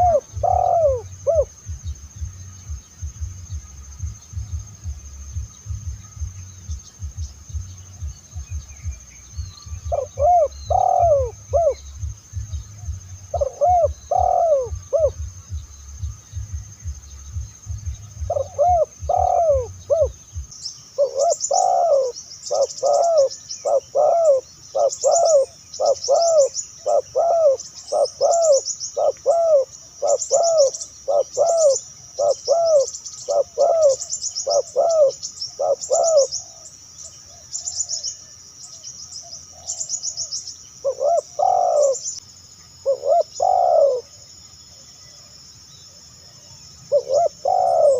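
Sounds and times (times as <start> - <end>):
doves cooing: 0.0 - 6.4, 7.0 - 37.6, 40.8 - 42.2, 42.8 - 44.2, 46.3 - 47.9.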